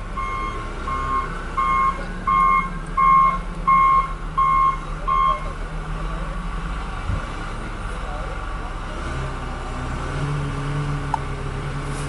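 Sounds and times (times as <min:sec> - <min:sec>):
diesel engine running: 0:00.0 - 0:12.0
backup alarm beeping: 0:00.2 - 0:05.4.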